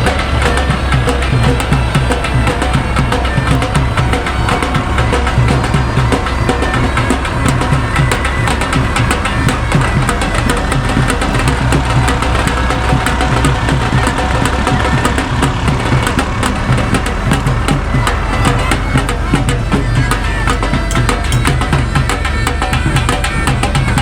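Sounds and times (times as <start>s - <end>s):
music with drums: 0.0s - 24.0s.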